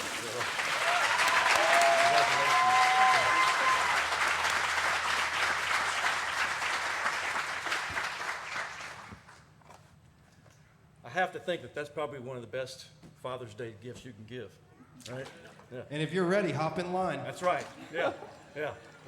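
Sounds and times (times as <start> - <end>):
people cheering: 0.0 - 9.2
congregation applauding: 0.0 - 9.4.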